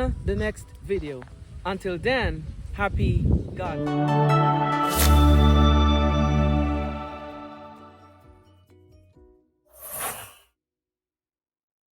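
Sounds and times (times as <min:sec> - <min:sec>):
background music: 0:03.7 - 0:09.4
short whoosh: 0:09.7 - 0:10.4.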